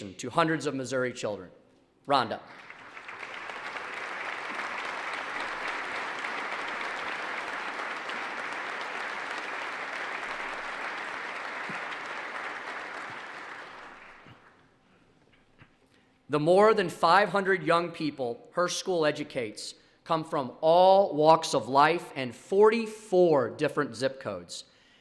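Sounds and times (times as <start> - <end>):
crowd applauding: 2.4 - 14.7.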